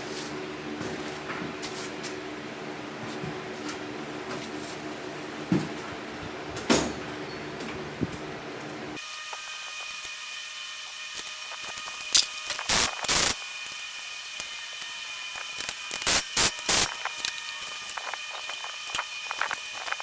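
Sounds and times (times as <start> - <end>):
fan humming: 0.0 - 9.0
tool rasping bursts: 11.1 - 20.0.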